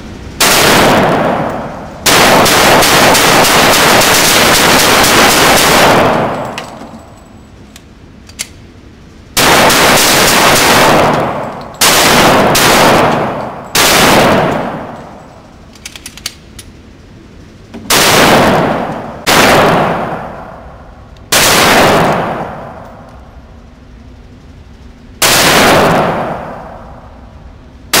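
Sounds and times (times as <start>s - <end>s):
pistol shots ringing: 0.4s - 7.3s, 9.4s - 15.5s, 17.8s - 20.7s, 21.3s - 23.1s
small clicks: 15.7s - 16.7s.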